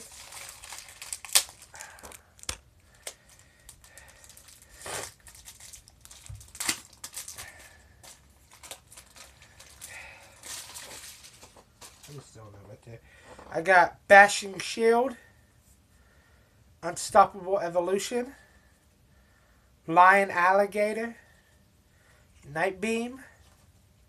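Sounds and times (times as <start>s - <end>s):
card pack wrapper crinkling: 0.0s - 12.2s.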